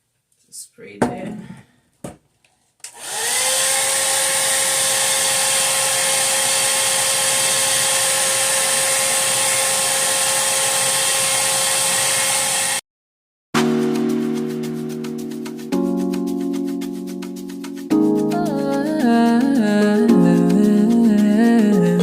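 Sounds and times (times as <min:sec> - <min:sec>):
hair dryer blowing: 0:02.8 - 0:12.8.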